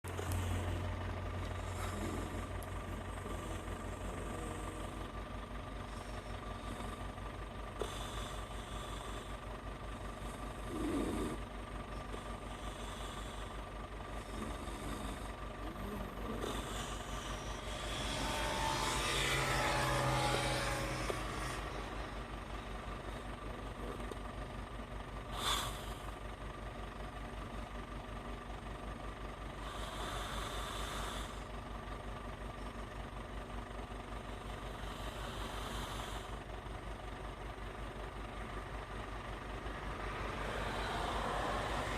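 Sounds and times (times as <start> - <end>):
steady low hum: 0.0 - 41.9
person snoring: 1.6 - 5.0, 10.2 - 11.4, 14.2 - 21.9, 29.6 - 31.4.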